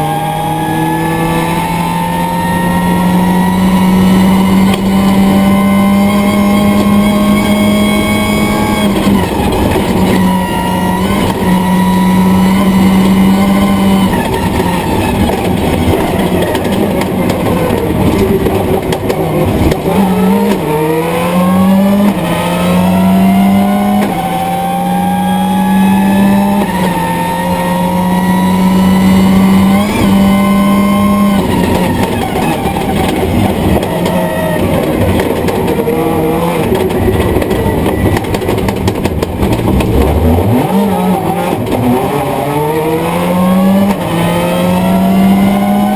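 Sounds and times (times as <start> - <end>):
car engine revving hard: 0.0 - 45.9.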